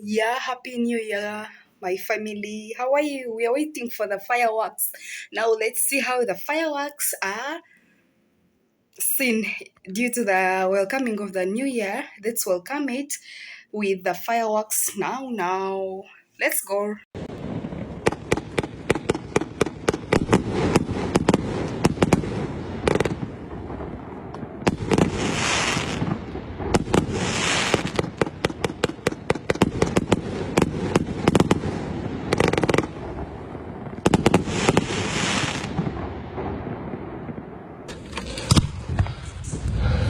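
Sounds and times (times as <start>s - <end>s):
fireworks hissing crackle: 17.2s - 33.2s, 33.8s - 36.6s, 37.9s - 40.0s
fireworks bangs and pops: 17.2s - 40.0s.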